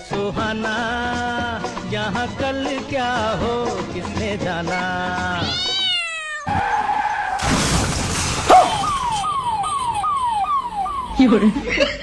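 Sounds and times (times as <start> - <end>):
cat meowing: 5.3 - 6.6
tyre skidding: 6.5 - 9.2
quick falling whistle tones: 6.6 - 11.0
loud hit: 7.4 - 9.4.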